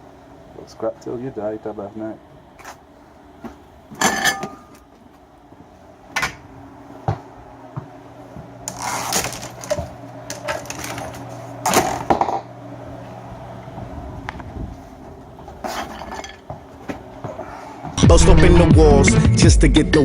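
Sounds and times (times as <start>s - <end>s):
scrap metal clattering: 15.5s - 16.5s.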